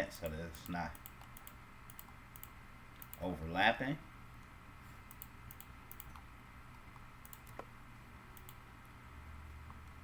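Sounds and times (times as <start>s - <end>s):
keyboard taps and mouse clicks: 6.9s - 7.7s.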